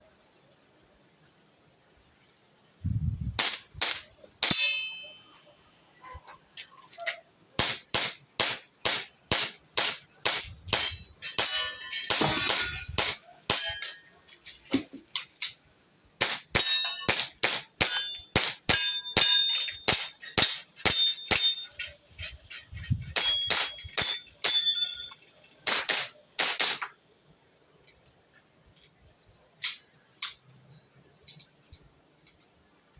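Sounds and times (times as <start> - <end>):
airsoft pistol firing: 3.4 - 4.6, 7.6 - 11.6, 25.6 - 26.9
bb clanging on metal target: 10.5 - 14.2, 16.6 - 17.2, 17.8 - 25.4.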